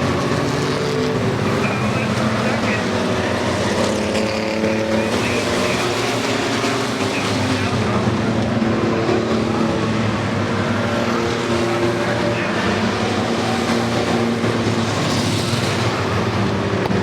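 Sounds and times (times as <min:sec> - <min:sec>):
race truck engines: 0:00.0 - 0:17.0.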